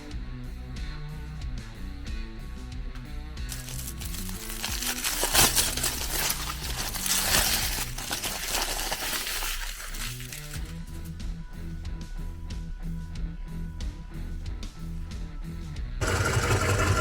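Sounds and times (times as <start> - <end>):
guitar background music: 0.0 - 16.0
meat grinder crunching food: 3.5 - 10.7, 16.0 - 17.0.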